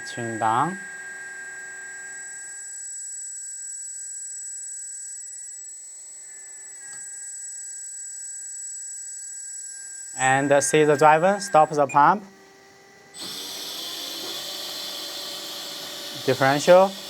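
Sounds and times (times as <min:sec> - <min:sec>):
hydraulic pump motor whining: 0:10.2 - 0:17.0.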